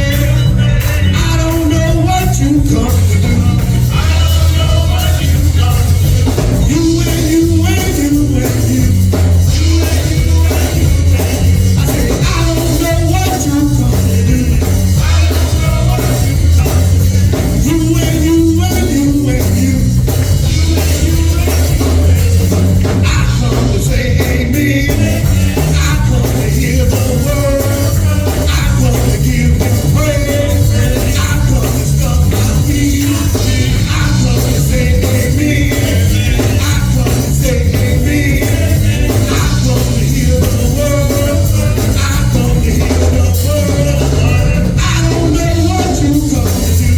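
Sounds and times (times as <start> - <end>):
bass: 0.0 - 46.9
drum kit: 0.0 - 46.9
live band worship music: 0.0 - 46.9
singing: 0.0 - 46.9.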